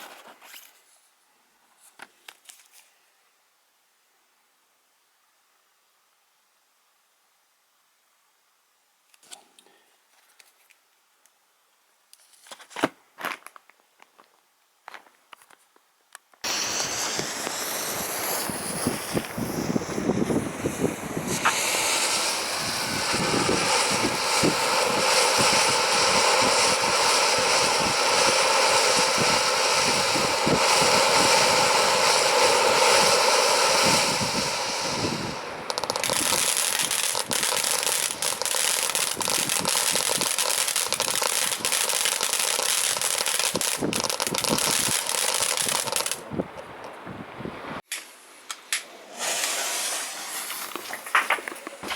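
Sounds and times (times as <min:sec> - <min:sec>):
firework fountain hissing and crackling: 0:16.4 - 0:46.4, 0:48.7 - 0:51.9.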